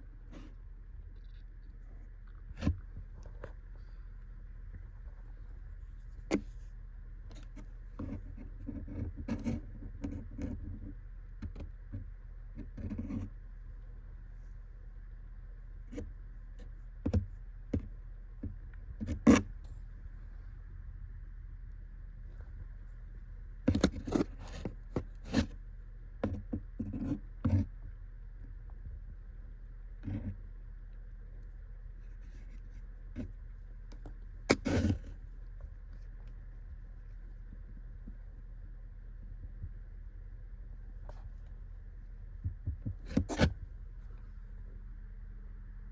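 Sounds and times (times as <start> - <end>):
cat scraping wooden stick: 23.7 - 25.6, 34.4 - 35.2, 42.9 - 43.6.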